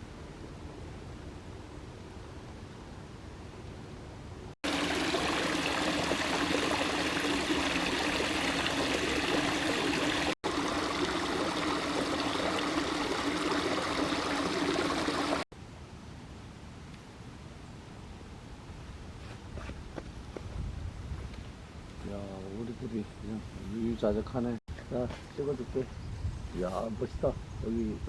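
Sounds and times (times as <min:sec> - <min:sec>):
outdoor ambience: 0:00.0 - 0:28.0
stream water rushing: 0:04.6 - 0:15.4.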